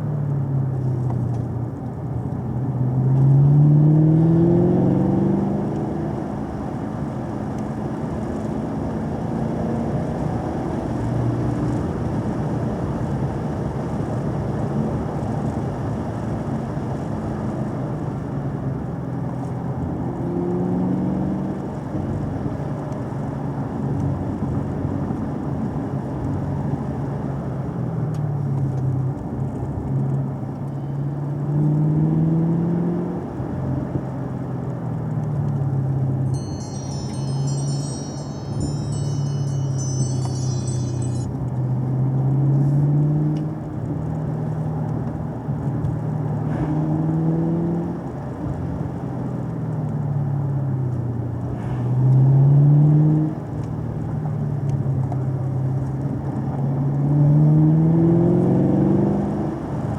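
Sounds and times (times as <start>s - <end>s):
car engine revving and easing off: 2.6s - 7.2s, 31.4s - 34.1s, 42.2s - 49.3s, 51.4s - 54.1s, 56.3s - 59.9s.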